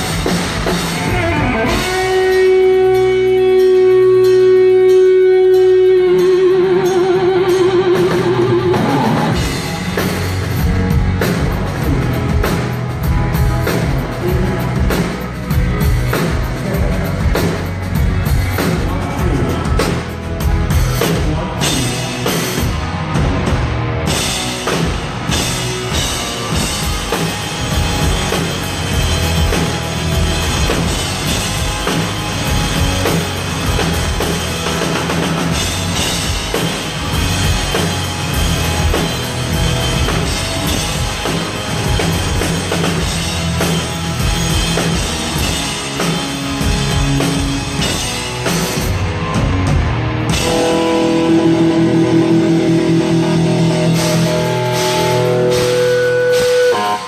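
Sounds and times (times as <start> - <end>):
electric guitar notes ringing: 0.0 - 10.3, 49.8 - 57.0
drum kit: 0.0 - 57.0
rock band playing loudly: 0.0 - 57.0.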